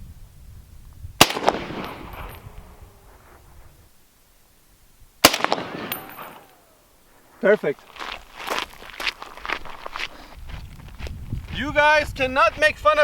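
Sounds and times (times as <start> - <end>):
rifle shots echoing: 1.2 - 3.0, 5.2 - 6.9.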